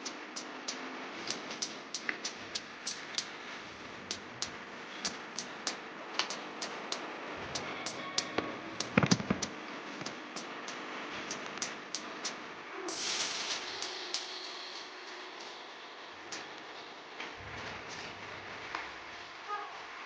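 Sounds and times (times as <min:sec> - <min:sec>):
food hissing and crackling: 0:11.2 - 0:16.4.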